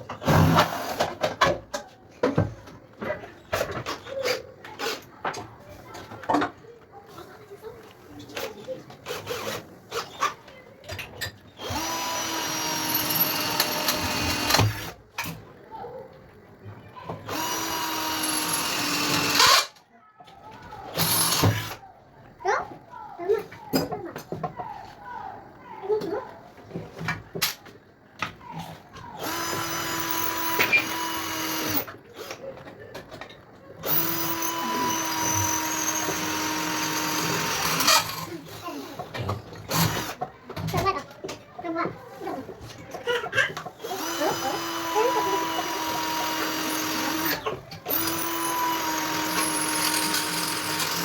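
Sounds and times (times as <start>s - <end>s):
electric drill running: 11.6s - 15.0s, 17.3s - 19.7s, 21.0s - 21.8s, 29.2s - 31.9s, 33.8s - 38.3s, 39.7s - 40.2s, 43.8s - 51.0s
electric power tool spinning: 11.6s - 15.0s, 17.3s - 19.7s, 29.2s - 31.9s, 33.8s - 38.3s, 39.7s - 40.2s, 43.8s - 51.0s.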